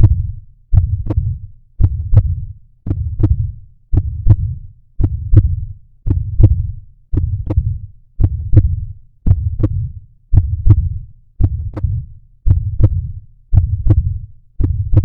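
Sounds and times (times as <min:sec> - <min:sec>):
human heartbeat thumping: 0:00.0 - 0:15.0.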